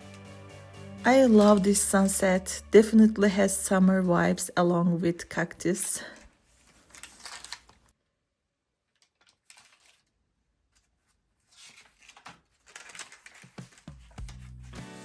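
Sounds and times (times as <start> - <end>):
paper pages rustling: 1.1 - 2.3, 5.7 - 7.9, 8.9 - 15.0.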